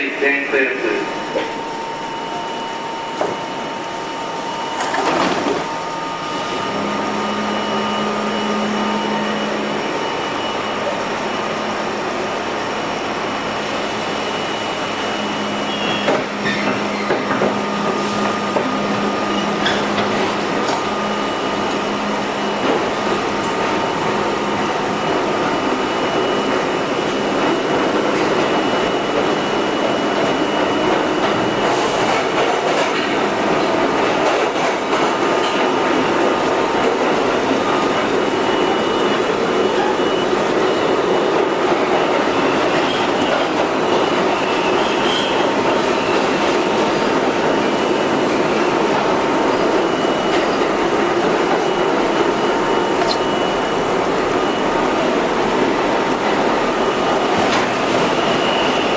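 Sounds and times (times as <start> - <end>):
rumble of train wheels: 0.0 - 58.9
high wheel squeals: 14.4 - 18.0, 42.2 - 50.6.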